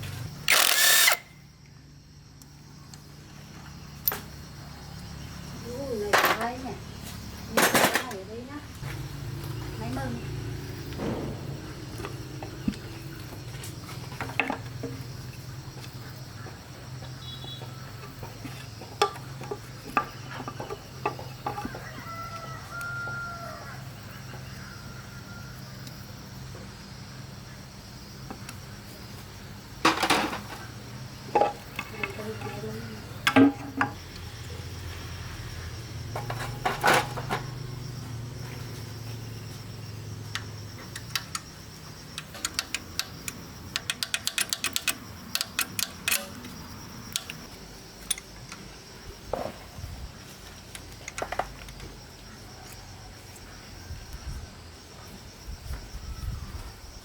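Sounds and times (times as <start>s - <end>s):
hard knocks and clanks: 10.8s - 13.6s
rooster crowing: 21.4s - 25.8s.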